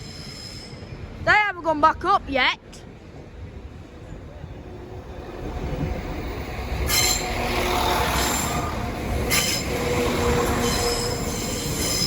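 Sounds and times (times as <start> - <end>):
train wheels squealing: 0.0 - 1.1, 6.6 - 12.0.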